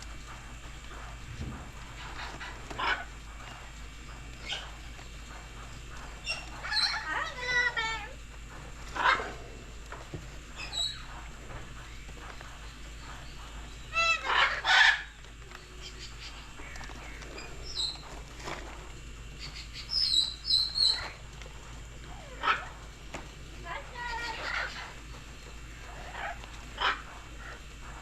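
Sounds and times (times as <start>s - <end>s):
bird squawks and chirps: 6.2s - 8.0s, 19.4s - 21.2s.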